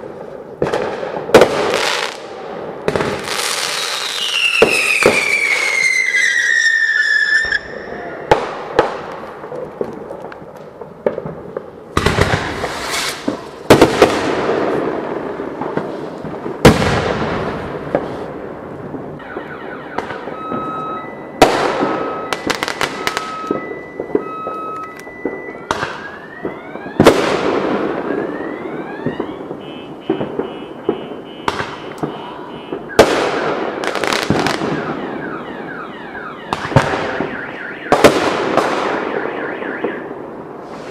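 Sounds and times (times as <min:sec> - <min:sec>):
fireworks bangs and crackle: 0:00.0 - 0:40.9
whistling firework shells: 0:03.5 - 0:08.5, 0:19.3 - 0:40.9
car alarm pulsing: 0:19.2 - 0:27.2, 0:27.8 - 0:33.1, 0:34.6 - 0:38.2, 0:38.9 - 0:40.2.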